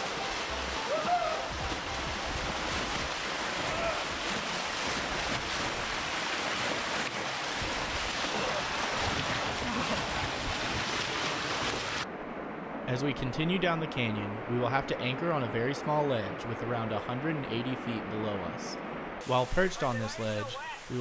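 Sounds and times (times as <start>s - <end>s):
waterfall rushing: 0.0s - 12.0s, 19.2s - 21.0s.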